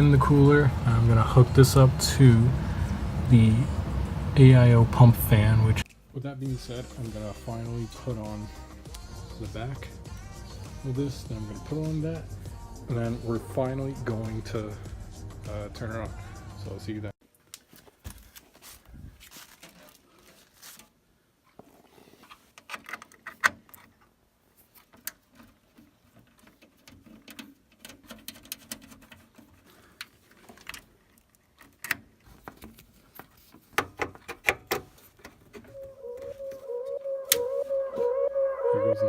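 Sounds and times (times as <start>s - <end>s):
music: 6.4s - 17.1s, 35.7s - 39.0s.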